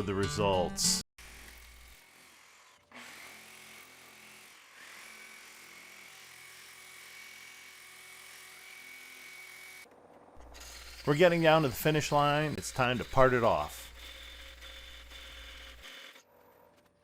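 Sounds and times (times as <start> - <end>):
faint motor hum: 10.4 - 17.0.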